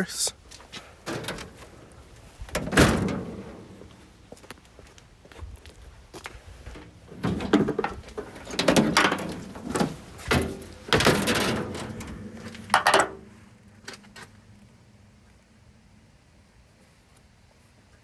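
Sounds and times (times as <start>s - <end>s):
sheet metal clanking and scraping: 0.9s - 4.2s, 6.7s - 13.4s.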